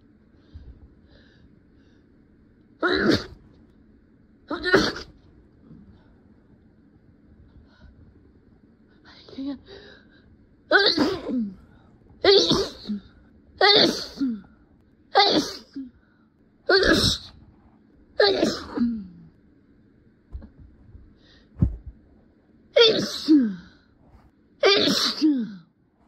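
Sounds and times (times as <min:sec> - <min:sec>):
person sneezing: 0:04.5 - 0:05.1, 0:10.8 - 0:11.6, 0:12.3 - 0:14.5, 0:18.2 - 0:19.2, 0:24.6 - 0:25.5
soft thump: 0:21.6 - 0:22.0.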